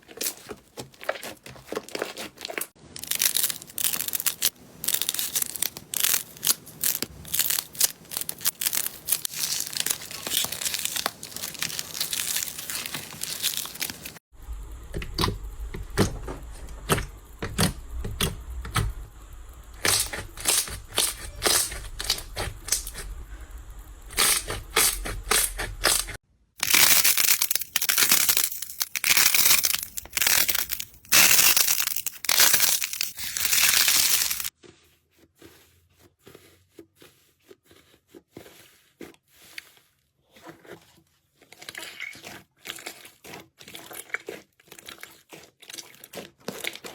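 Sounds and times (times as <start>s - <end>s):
slime crackling and popping: 1.0s - 14.2s, 26.6s - 34.5s.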